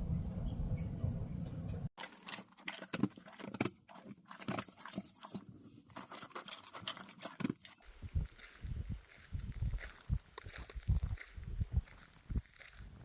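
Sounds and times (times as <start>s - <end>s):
low rumble: 0.0s - 1.9s, 7.9s - 13.0s.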